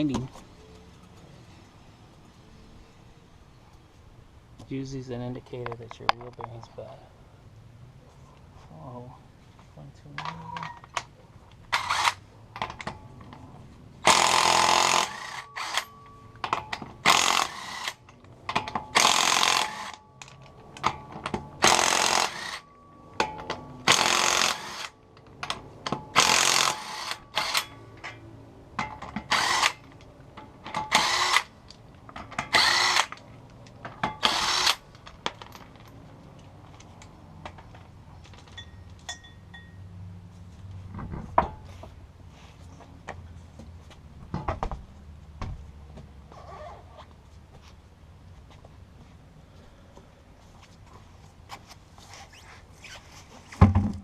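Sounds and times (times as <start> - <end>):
impact wrench bursts: 11.7 - 12.2, 14.0 - 15.9, 16.5 - 20.0, 21.3 - 22.7, 23.4 - 25.0, 25.9 - 27.8, 28.9 - 29.9, 30.7 - 31.6, 32.4 - 33.2, 34.0 - 34.9.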